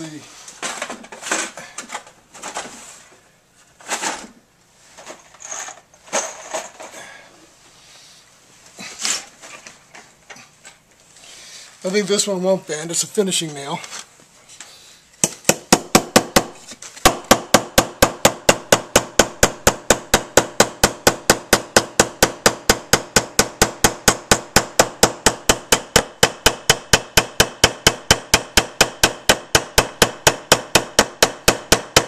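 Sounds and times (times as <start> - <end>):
flashlight hammering nail into wood: 15.2 - 32.0.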